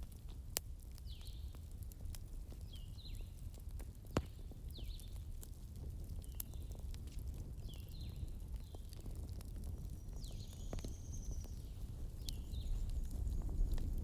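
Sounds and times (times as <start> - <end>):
bonfire crackling and popping: 0.0 - 14.0
low fire rumble: 0.0 - 14.0.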